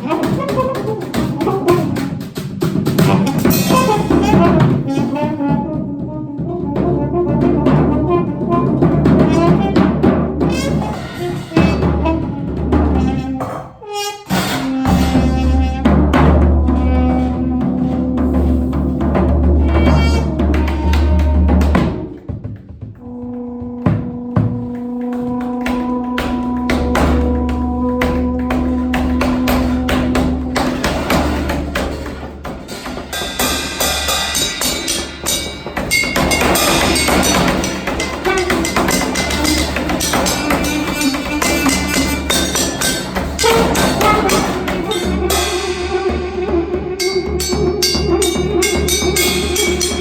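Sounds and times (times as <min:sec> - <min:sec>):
percussion strikes and tapping: 0:00.0 - 0:50.0
trombone holding a note: 0:34.5 - 0:50.0.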